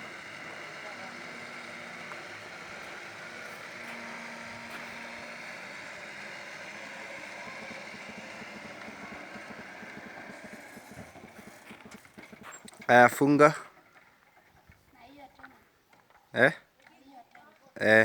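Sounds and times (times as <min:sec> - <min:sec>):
gate motor whirring: 0:00.0 - 0:13.0.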